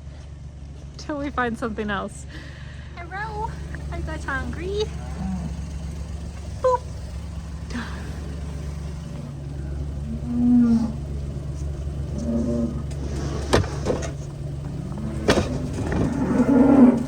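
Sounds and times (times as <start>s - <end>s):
vehicle engine humming: 0.0s - 17.0s
cattle mooing: 3.4s - 17.0s.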